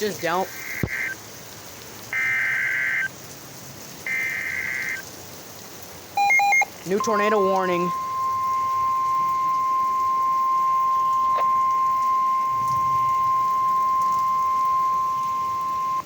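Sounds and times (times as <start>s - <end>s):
loud high alarm tone: 0.5s - 1.2s, 2.2s - 3.1s, 4.1s - 5.0s, 6.2s - 16.0s.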